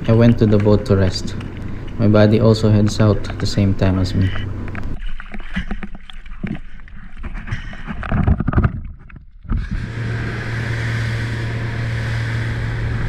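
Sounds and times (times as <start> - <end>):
boat engine running: 0.0 - 5.0, 9.5 - 13.0.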